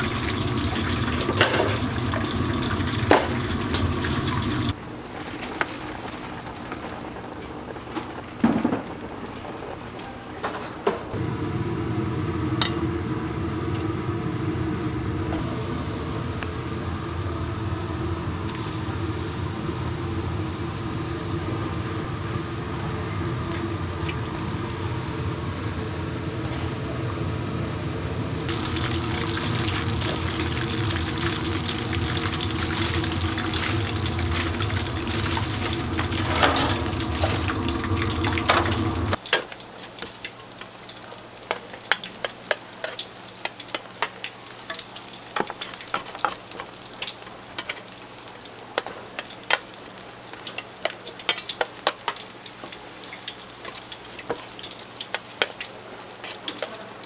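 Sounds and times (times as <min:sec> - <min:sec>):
food frying in hot oil: 0:00.0 - 0:04.8, 0:11.2 - 0:57.0
steady machine hum: 0:00.0 - 0:04.8, 0:11.2 - 0:39.2.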